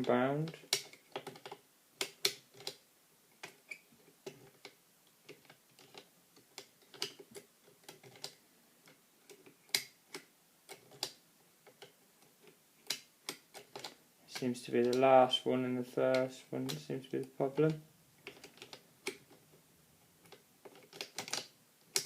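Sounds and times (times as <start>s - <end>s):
lock picks clicking in lock: 18.2s - 19.3s, 20.2s - 22.0s.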